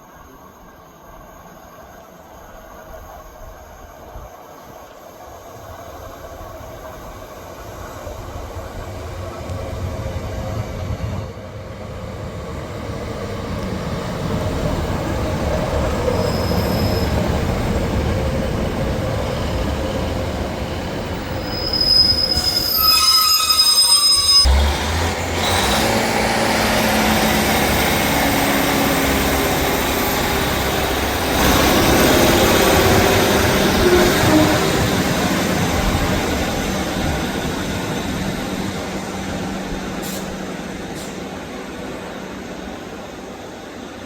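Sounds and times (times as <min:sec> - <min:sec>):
train running through station: 0:00.0 - 0:44.0
high-pitched wheel squeal: 0:15.8 - 0:17.8, 0:21.2 - 0:24.7, 0:31.0 - 0:35.5.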